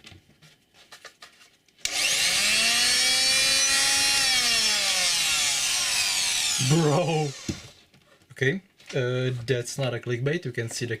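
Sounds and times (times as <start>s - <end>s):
electric tool motor whine: 1.8s - 7.8s.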